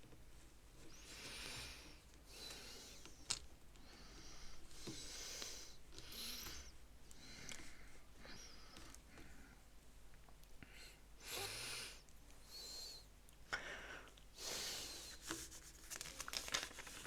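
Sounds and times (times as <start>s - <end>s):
rustling of small plastic parts: 15.1s - 17.0s.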